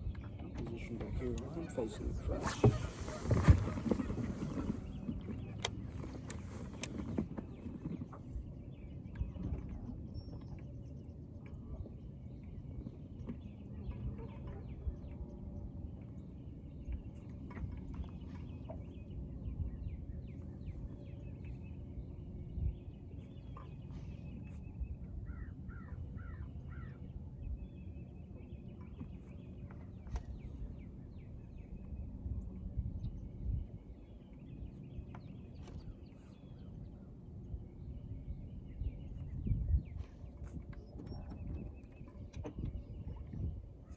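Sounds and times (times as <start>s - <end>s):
wind buffeting microphone: 0.0s - 9.8s, 22.3s - 23.4s, 30.2s - 43.9s.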